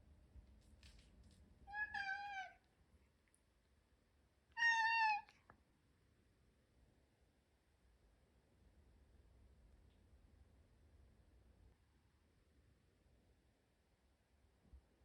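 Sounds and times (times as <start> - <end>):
cat meowing: 1.7 - 2.7, 4.6 - 5.3.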